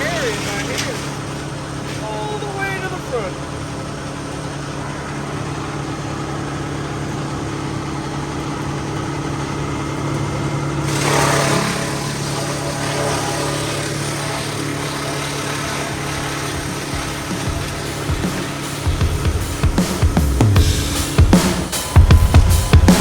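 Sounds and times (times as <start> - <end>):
heavy machine engine humming: 0.0 - 23.0
rush of noise: 13.1 - 23.0.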